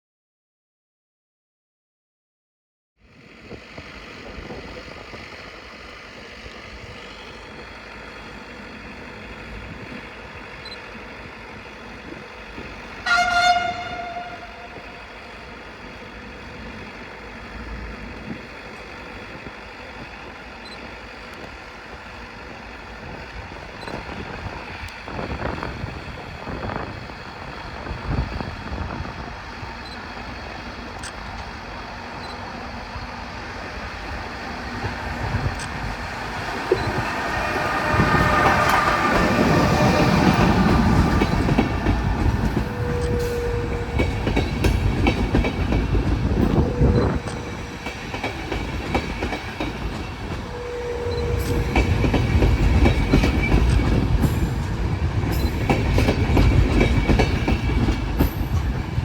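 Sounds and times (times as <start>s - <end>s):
train rumbling: 3.1s - 59.0s
train horn: 13.0s - 15.0s, 37.4s - 40.4s, 42.5s - 44.4s, 50.3s - 52.2s.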